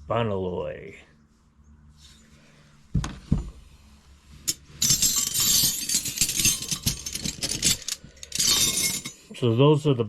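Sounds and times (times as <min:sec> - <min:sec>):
steel wrenches clinking together: 0:04.5 - 0:09.3.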